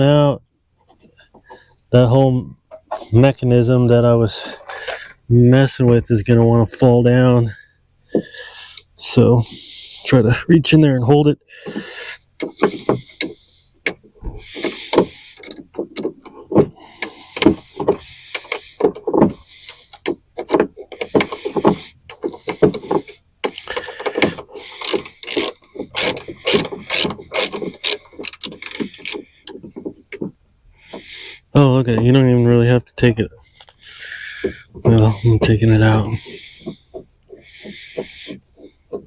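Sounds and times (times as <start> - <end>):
hand tools clicking and rattling: 12.0 - 30.3.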